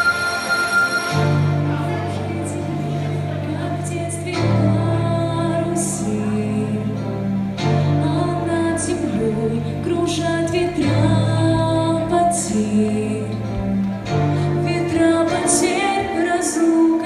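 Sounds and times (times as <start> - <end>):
bright high accents: 0.0 - 1.8
bass line: 0.0 - 16.9
sustained chords: 0.0 - 16.9.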